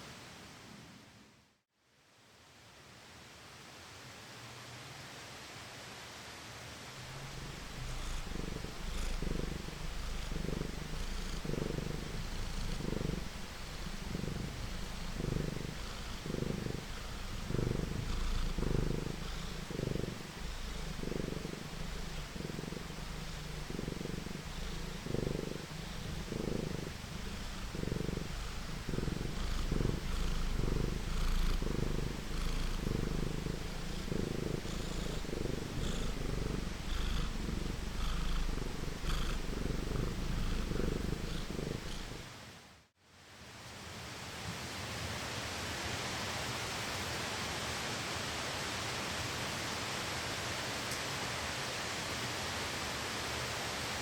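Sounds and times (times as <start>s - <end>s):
rain hissing: 6.8s - 42.4s
fireplace crackling: 7.0s - 42.3s
cat purring: 7.0s - 42.4s.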